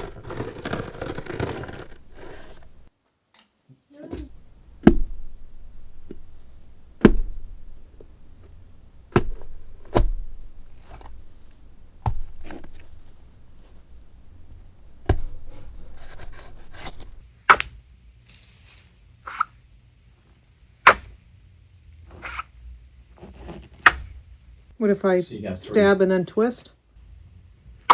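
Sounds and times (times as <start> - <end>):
blade stabbing into produce: 4.2 - 17.6.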